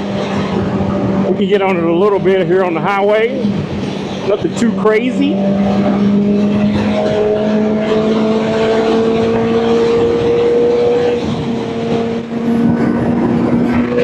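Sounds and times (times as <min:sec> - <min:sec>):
wind rush: 0:00.0 - 0:14.0
motorcycle engine at high revs: 0:04.4 - 0:14.0.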